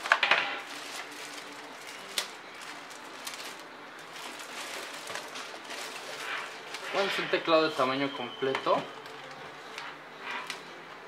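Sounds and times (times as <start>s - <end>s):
packaging rustling: 0.0s - 7.9s.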